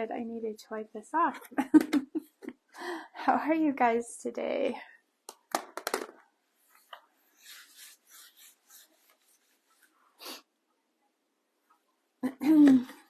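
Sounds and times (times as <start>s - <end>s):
cloth wiping wooden board: 7.2s - 9.9s.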